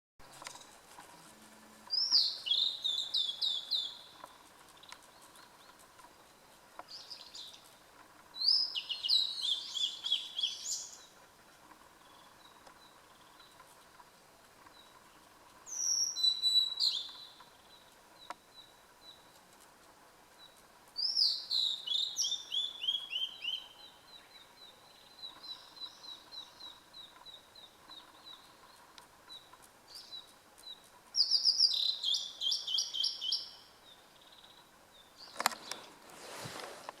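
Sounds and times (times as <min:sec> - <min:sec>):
bird whistling song: 0:01.9 - 0:04.1, 0:08.4 - 0:11.1, 0:15.7 - 0:17.4, 0:21.0 - 0:24.4, 0:31.2 - 0:33.6.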